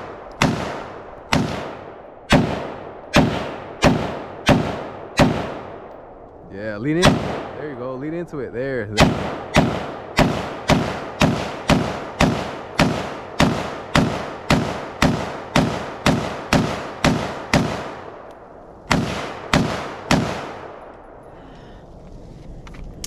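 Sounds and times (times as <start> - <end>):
rifle shots: 0.0 - 6.2, 6.8 - 7.8, 9.0 - 21.2.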